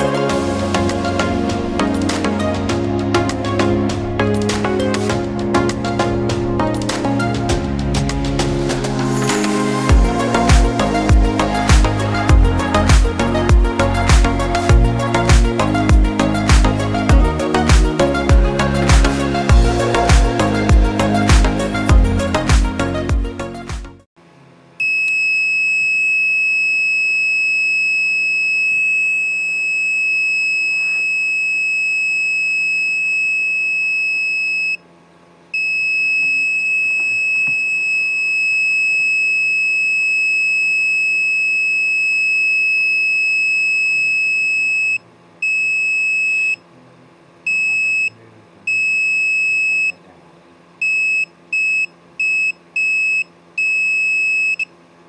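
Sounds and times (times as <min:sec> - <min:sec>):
high-pitched alarm buzzer: 0:24.8 - 0:34.8, 0:35.6 - 0:46.6.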